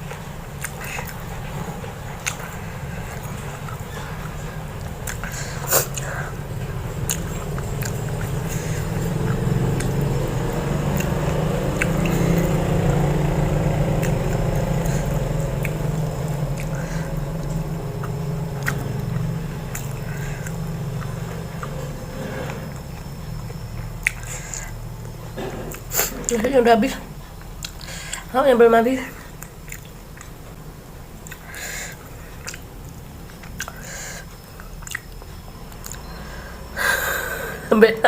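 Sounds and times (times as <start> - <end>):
close chewing and biting: 0.0 - 26.4, 27.2 - 28.3, 29.2 - 30.5, 31.1 - 36.1
steady low hum: 0.0 - 38.0
wet mouth sounds: 0.1 - 1.4, 4.8 - 6.4, 14.0 - 21.8, 24.0 - 24.8, 29.2 - 30.4, 31.2 - 32.7, 33.3 - 36.1.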